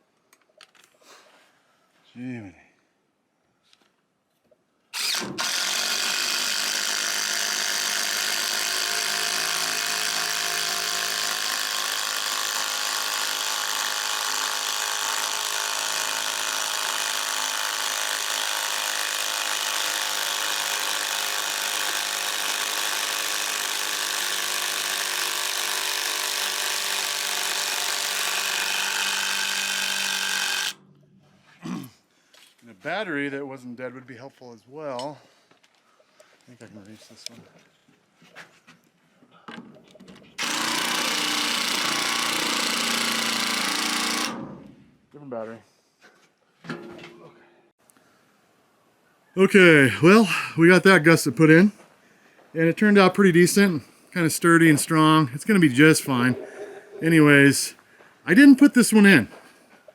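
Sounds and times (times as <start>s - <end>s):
cordless drill driving a screw: 5.0s - 30.8s, 40.4s - 44.4s.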